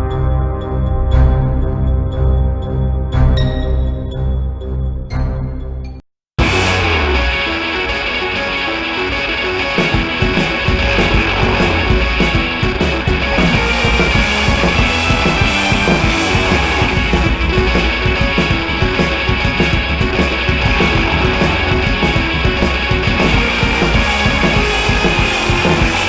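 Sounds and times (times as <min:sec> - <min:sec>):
rock music with distorted guitars: 0:06.4 - 0:26.0.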